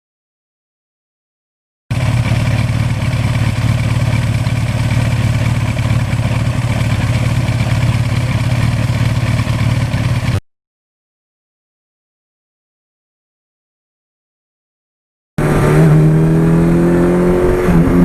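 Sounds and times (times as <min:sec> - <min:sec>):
motorcycle engine running: 0:01.9 - 0:10.4, 0:15.4 - 0:18.0.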